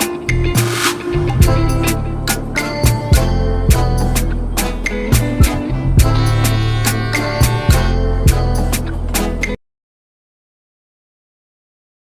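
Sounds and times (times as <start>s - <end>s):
music with drums and bass guitar: 0.0s - 9.6s.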